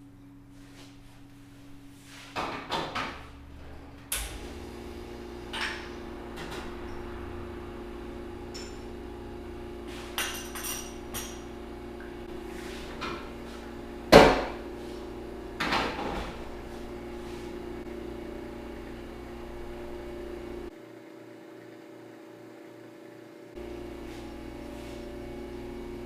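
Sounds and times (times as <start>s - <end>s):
espresso machine pump humming: 3.5s - 26.0s
clinks of portafilter and cups: 10.1s - 11.5s.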